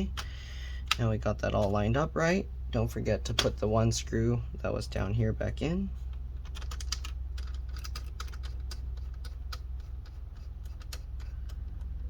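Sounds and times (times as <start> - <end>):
steady low hum: 0.0 - 12.0
clicks of small screws and plastic parts: 6.1 - 12.0.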